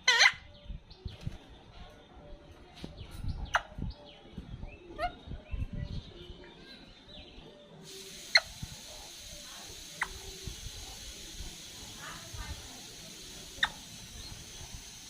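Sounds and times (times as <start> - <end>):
parrot calling: 0.0 - 0.4, 13.4 - 14.1.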